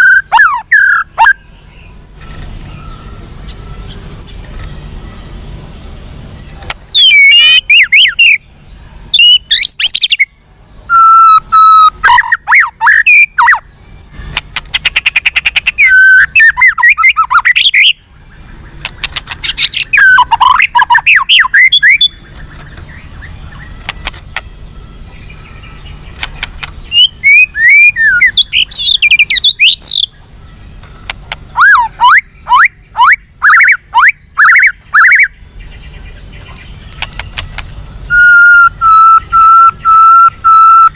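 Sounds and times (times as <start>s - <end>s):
songbird whistling and trilling: 0.0s - 5.4s, 6.3s - 40.9s.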